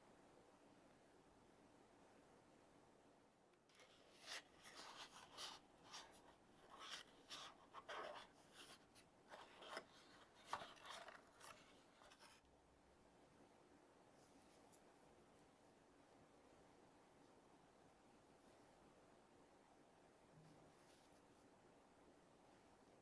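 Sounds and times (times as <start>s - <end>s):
packaging rustling and rubbing: 3.7s - 12.4s.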